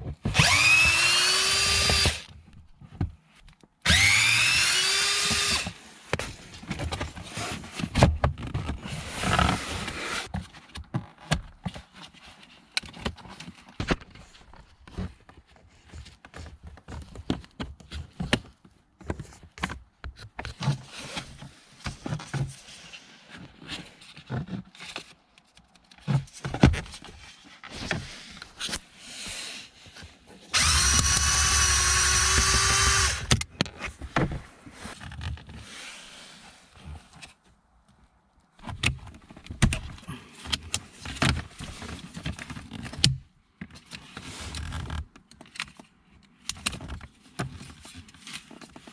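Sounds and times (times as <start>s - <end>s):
small electric motor whining: 0.3s - 2.3s, 3.9s - 5.8s, 30.6s - 33.3s.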